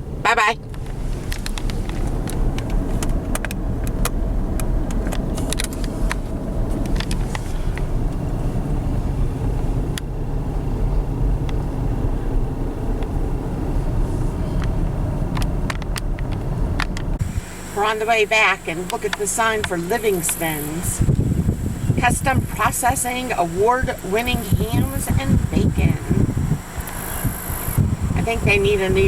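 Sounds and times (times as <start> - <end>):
car road and engine rumble: 0.0 - 29.0
sharp clicks and ticks: 0.6 - 8.2, 14.6 - 17.2, 26.8 - 27.8.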